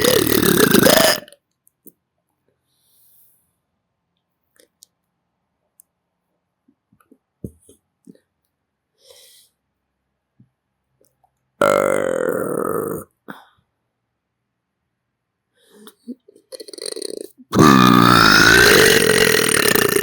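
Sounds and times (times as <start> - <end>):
loud long burp: 0.0 - 1.4, 11.6 - 13.2, 16.6 - 20.0.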